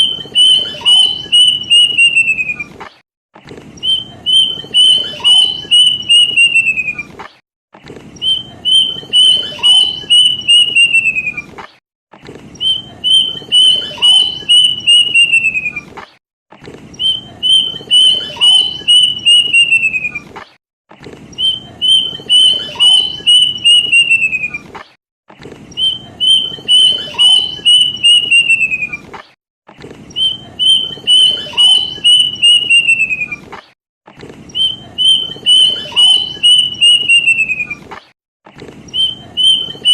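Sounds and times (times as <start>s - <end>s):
cuckoo whistled song: 0.0s - 2.8s, 3.8s - 7.2s, 8.2s - 11.5s, 12.6s - 15.9s, 17.0s - 20.3s, 21.4s - 24.7s, 25.7s - 29.1s, 30.1s - 33.5s, 34.5s - 37.9s, 38.9s - 39.9s.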